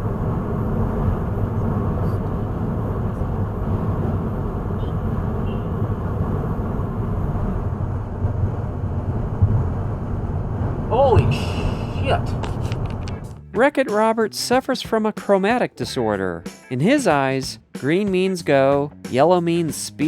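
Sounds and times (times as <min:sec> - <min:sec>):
car driving road and engine noise: 0:00.0 - 0:13.4.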